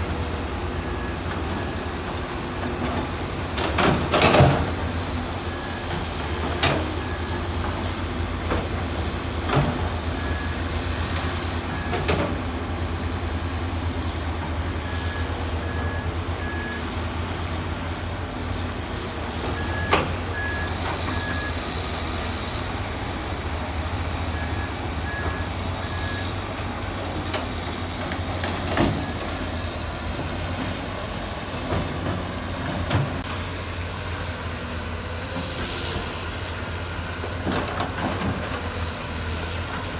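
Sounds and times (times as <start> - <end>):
diesel machine engine drone: 0.0 - 39.9
reversing alarm beeping: 14.7 - 17.5, 19.4 - 22.0, 24.3 - 26.5.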